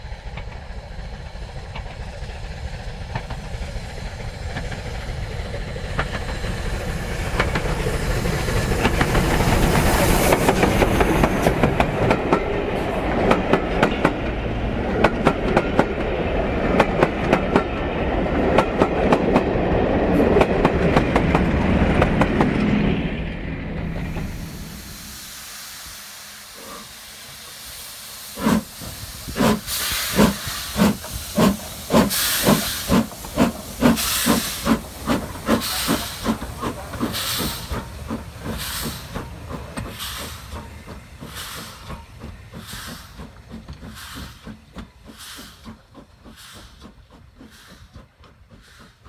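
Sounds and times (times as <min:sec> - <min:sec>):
steam hiss: 0:00.0 - 0:13.9, 0:23.8 - 0:49.0
steam locomotive chuffing: 0:00.0 - 0:49.0.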